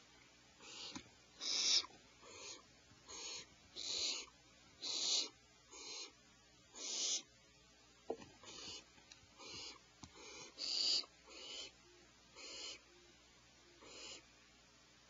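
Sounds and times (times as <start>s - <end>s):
owlets hissing begging calls: 0.6s - 6.2s, 6.8s - 7.3s, 9.4s - 12.9s, 13.8s - 14.3s.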